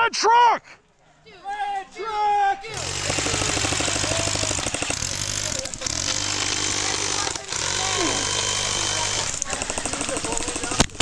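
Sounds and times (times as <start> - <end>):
full-auto airsoft gunfire: 2.7 - 11.0.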